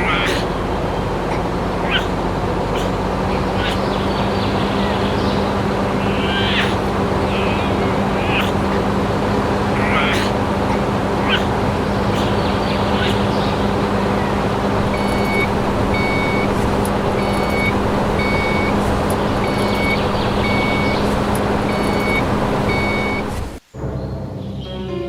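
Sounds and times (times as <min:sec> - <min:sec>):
constant low hum: 0:00.0 - 0:24.9
reversing beeper high beeps: 0:14.8 - 0:16.6, 0:17.2 - 0:18.8, 0:19.4 - 0:23.3.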